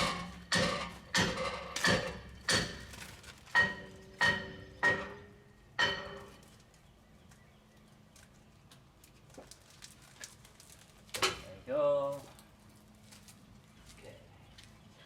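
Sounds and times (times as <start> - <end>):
hammer striking metal: 0.0 - 6.4.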